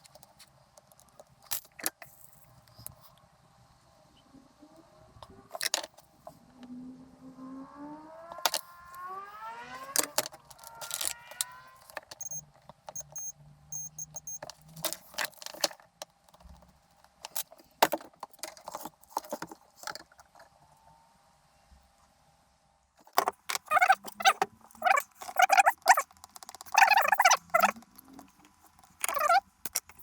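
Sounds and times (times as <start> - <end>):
short rising whine: 6.4 - 12.4.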